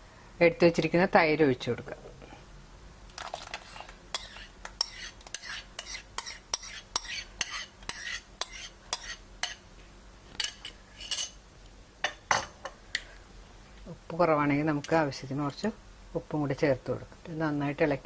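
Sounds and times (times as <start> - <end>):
spoon scraping cooking pan: 3.3 - 9.6.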